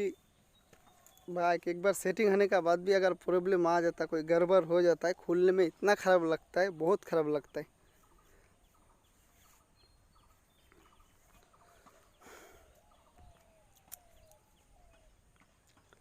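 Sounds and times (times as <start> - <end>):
faint wavering animal calls: 0.0 - 1.5, 5.0 - 16.0.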